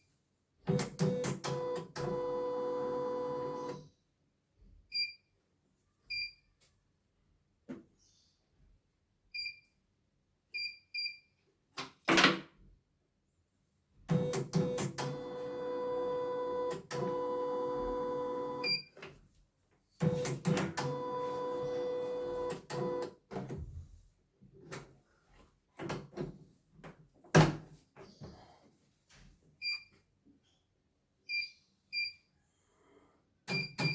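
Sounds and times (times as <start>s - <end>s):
embroidery machine stitching: 14.1s - 18.6s, 20.0s - 23.1s.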